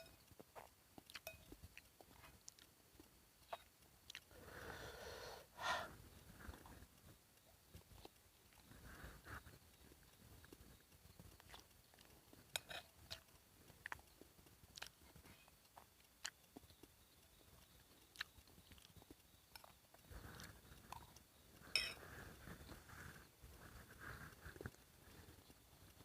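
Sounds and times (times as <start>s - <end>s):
person chewing: 0.4s - 4.3s, 9.4s - 23.2s.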